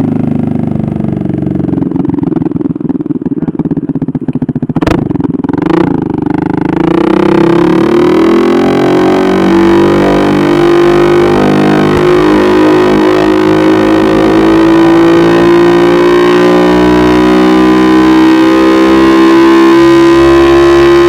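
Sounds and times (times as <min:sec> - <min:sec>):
vehicle engine revving high: 0:04.8 - 0:21.0.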